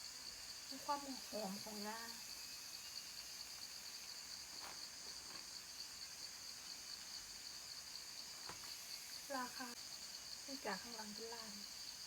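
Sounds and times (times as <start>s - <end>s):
cicadas chorus: 0.0s - 12.0s.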